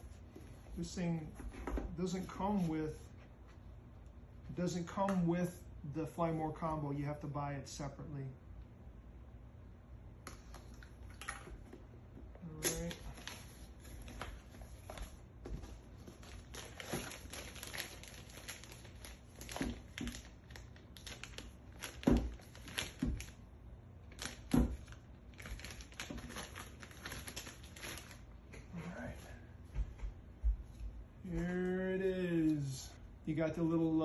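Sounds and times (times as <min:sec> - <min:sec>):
plastic and paper crinkling: 0:12.6 - 0:23.4, 0:24.1 - 0:28.2.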